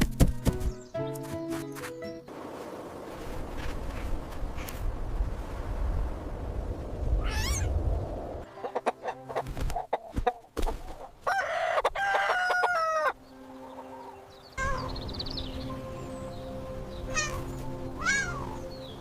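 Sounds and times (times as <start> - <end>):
chicken squawk: 7.2 - 7.7, 11.3 - 13.2, 17.1 - 18.6
rooster crowing: 11.3 - 13.2.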